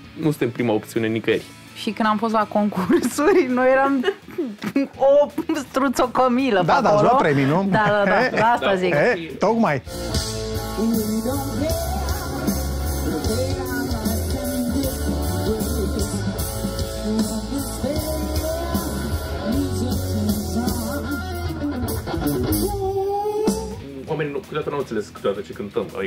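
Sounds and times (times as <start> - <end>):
rock band playing with singer: 9.8 - 24.7.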